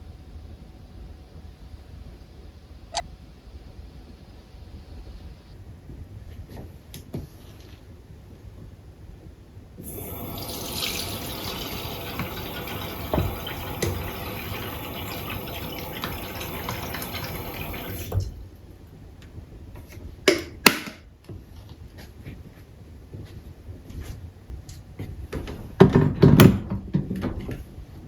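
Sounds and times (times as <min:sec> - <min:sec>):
water running from a tap: 0:09.8 - 0:18.4.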